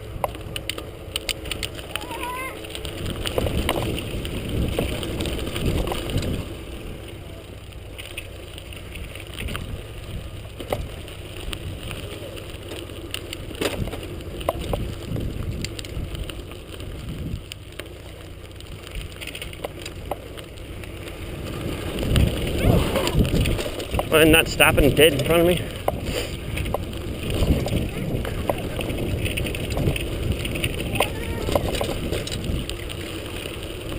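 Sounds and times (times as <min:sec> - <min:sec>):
small clicks and rattles: 0:00.0 - 0:33.9
wind buffeting microphone: 0:01.8 - 0:07.2, 0:13.4 - 0:17.6, 0:21.2 - 0:33.9.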